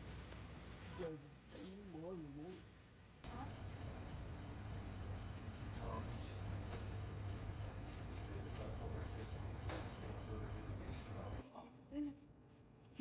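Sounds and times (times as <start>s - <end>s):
cricket chirping: 3.2s - 11.4s.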